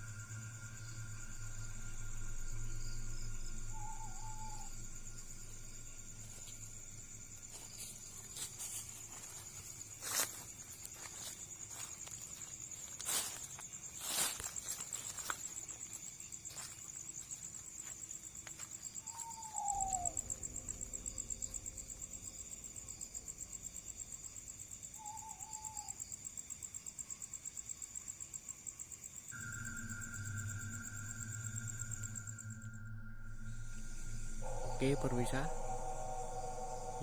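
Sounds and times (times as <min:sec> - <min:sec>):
warbling whistle: 0:00.0 - 0:05.3, 0:29.4 - 0:37.0
steady tone with low hum: 0:00.0 - 0:11.9, 0:29.3 - 0:37.0
crickets trilling: 0:00.0 - 0:37.0
falling whistle: 0:03.6 - 0:05.0.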